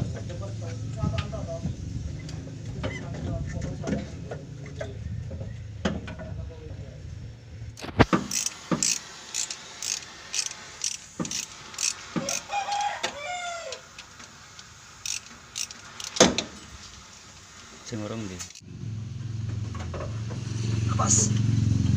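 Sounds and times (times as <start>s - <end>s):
hand tools clicking on metal: 7.8s - 12.9s, 13.7s - 16.3s.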